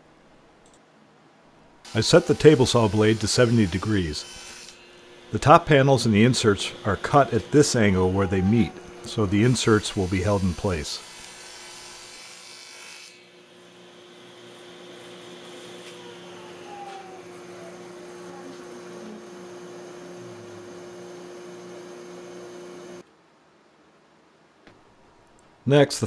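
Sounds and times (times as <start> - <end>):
table saw cutting: 1.8 - 23.0.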